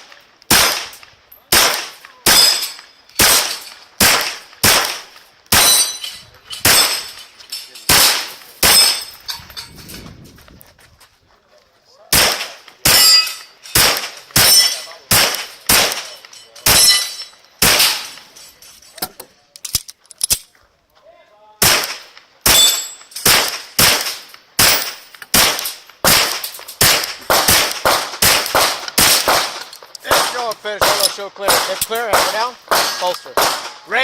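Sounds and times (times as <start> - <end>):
pistol shots: 0.5 - 6.0, 6.6 - 7.2, 7.9 - 9.1, 12.1 - 18.2, 21.6 - 33.9
steel target ringing: 5.6 - 7.2, 12.9 - 13.6, 16.0 - 18.1.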